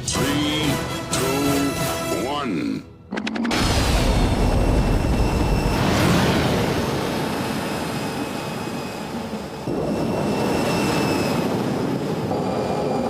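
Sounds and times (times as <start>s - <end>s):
aircraft jet engine in flight: 3.1s - 13.0s.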